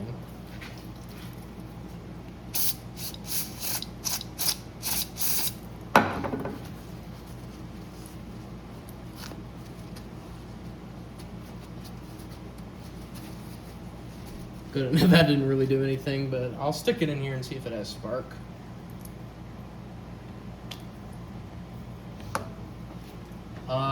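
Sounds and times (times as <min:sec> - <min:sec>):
aerosol spray squirts: 0:02.6 - 0:05.6.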